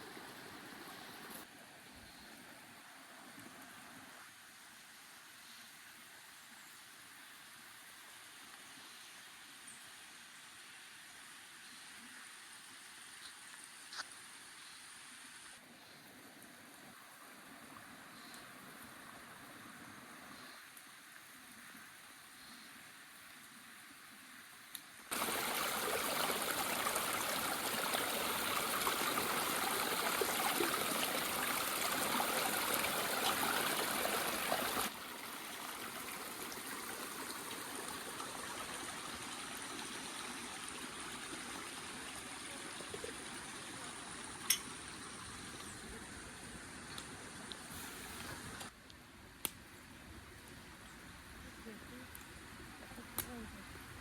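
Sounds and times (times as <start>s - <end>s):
stream water rushing: 0.0s - 1.6s, 25.1s - 48.7s.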